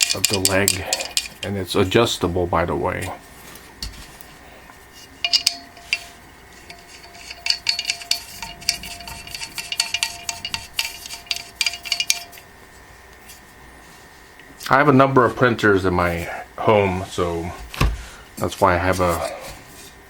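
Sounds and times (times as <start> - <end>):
metallic clinks and rattles: 0.0 - 1.6, 5.2 - 12.5.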